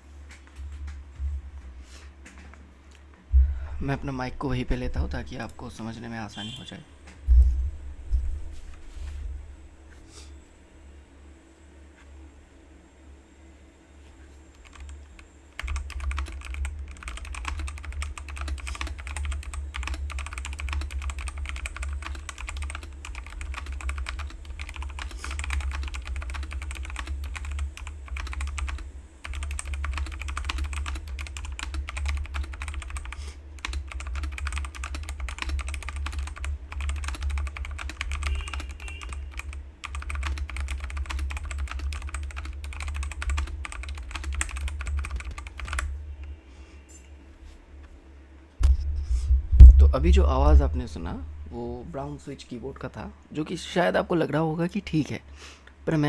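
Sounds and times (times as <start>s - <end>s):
fast mechanical keyboard typing: 14.5s - 46.0s.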